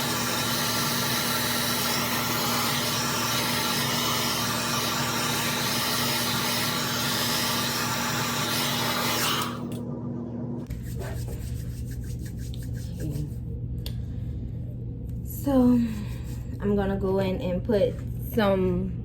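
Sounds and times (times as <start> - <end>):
hair dryer blowing: 0.0 - 9.8.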